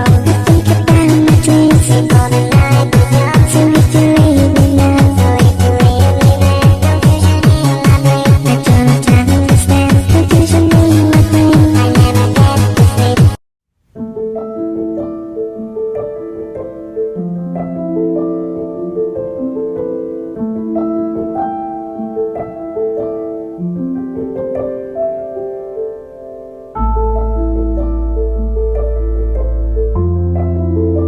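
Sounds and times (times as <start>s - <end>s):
electronic beat: 0.0s - 13.4s
solo piano piece: 13.9s - 31.0s.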